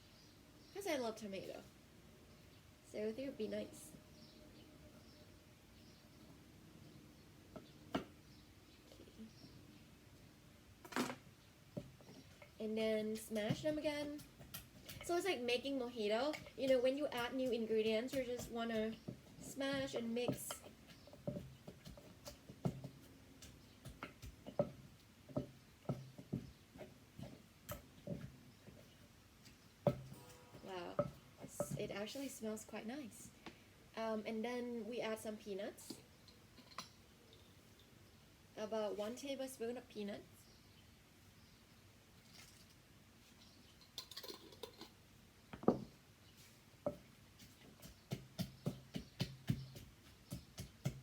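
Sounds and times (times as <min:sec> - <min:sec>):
pestle pounding in mortar: 0:13.2 - 0:15.3, 0:16.3 - 0:29.0, 0:29.8 - 0:31.9, 0:46.9 - 0:51.0.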